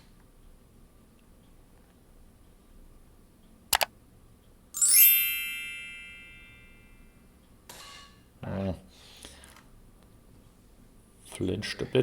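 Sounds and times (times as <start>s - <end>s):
bright metallic ring: 4.8s - 8.1s.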